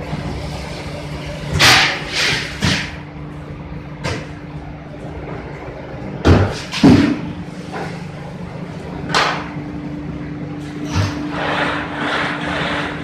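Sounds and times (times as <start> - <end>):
factory machinery humming: 0.0 - 13.0
loud knocks and thuds: 6.2 - 7.3.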